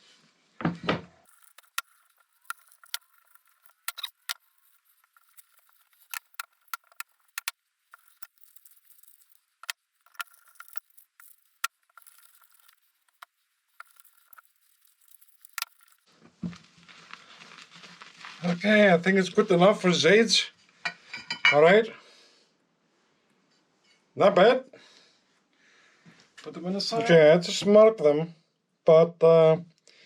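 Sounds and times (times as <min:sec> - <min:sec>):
metal parts clicking and tapping: 0:01.2 - 0:16.1
rustle of handling: 0:01.2 - 0:19.8.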